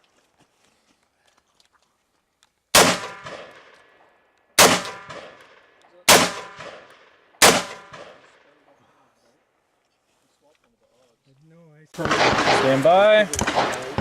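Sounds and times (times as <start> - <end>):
rifle shots with ringing echo: 2.7 - 8.7, 12.0 - 14.0.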